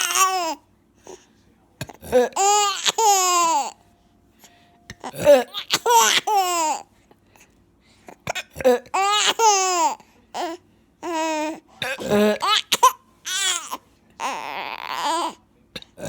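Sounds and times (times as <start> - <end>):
baby laughing: 5.0 - 6.8, 8.7 - 10.0, 12.2 - 15.3.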